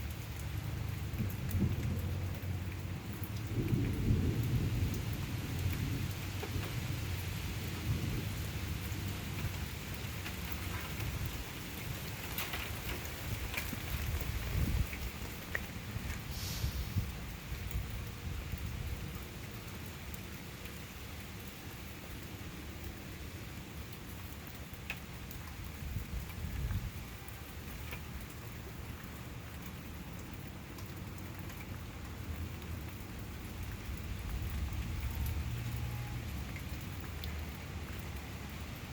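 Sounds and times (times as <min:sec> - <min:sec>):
sharp drip ticks: 0:00.0 - 0:16.3, 0:17.0 - 0:38.9
heavy rain: 0:00.0 - 0:38.9
low rumble of thunder: 0:00.8 - 0:19.3, 0:32.2 - 0:38.1.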